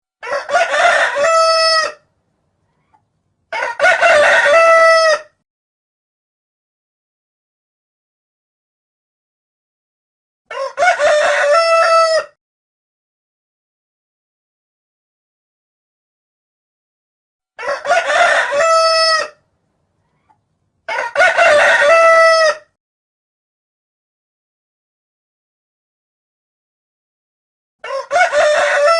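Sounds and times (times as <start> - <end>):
rooster crowing: 0.2 - 2.0, 3.5 - 5.4, 10.5 - 12.4, 17.6 - 19.4, 20.9 - 22.7, 27.8 - 28.9.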